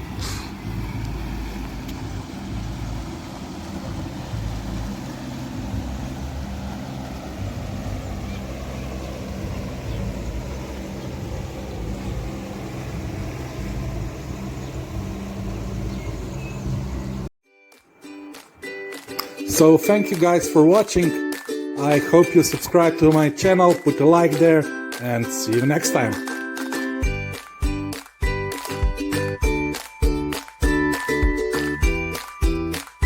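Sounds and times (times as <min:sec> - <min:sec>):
boat engine running: 0:00.0 - 0:17.3, 0:21.8 - 0:28.0.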